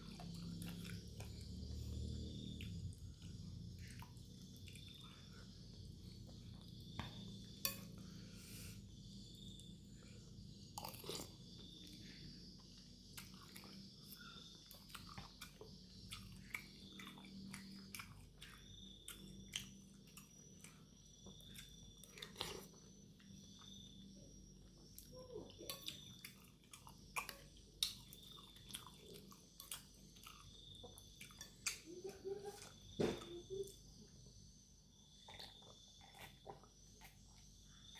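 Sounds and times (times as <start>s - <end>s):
chewing and biting food: 0.0s - 5.1s, 12.7s - 23.9s, 25.8s - 31.9s, 35.2s - 37.9s.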